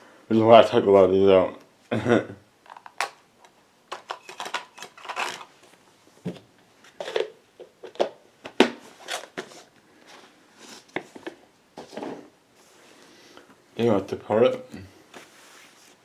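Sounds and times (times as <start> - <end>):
rustles and scrapes of handling: 8.8 - 13.6, 14.9 - 16.0.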